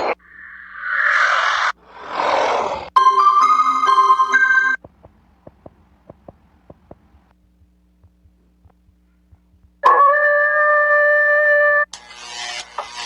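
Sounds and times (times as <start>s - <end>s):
faint irregular clicks: 4.8s - 9.8s.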